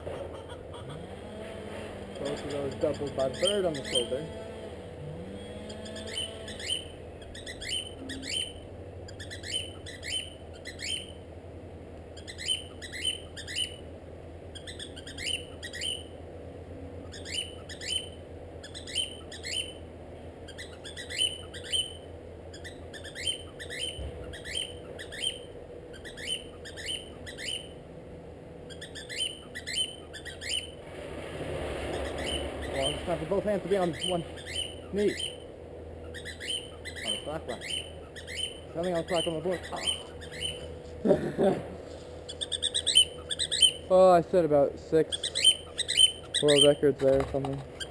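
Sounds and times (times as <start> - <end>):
cockatiel chirping: 2.2 - 4.1, 6.0 - 11.2, 12.2 - 13.8, 14.6 - 16.1, 17.0 - 19.8, 20.5 - 27.8, 28.7 - 30.8, 33.8 - 40.8, 42.3 - 43.9, 45.1 - 47.2.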